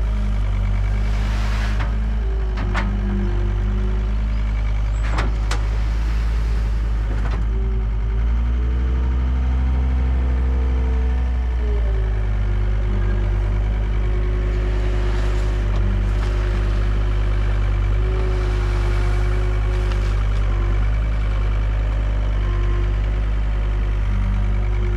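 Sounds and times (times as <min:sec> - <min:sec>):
excavator diesel engine running: 0:00.0 - 0:24.9.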